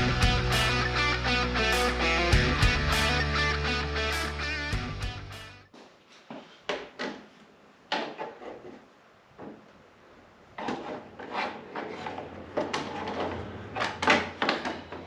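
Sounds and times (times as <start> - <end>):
rubbing scrapes: 10.6 - 13.9
tools knocking and clacking: 12.6 - 15.0.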